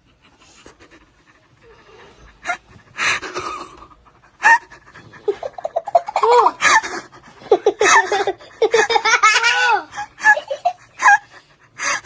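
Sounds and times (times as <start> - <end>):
dog panting: 0.0 - 6.0, 9.9 - 12.0
person giggling: 3.2 - 11.4.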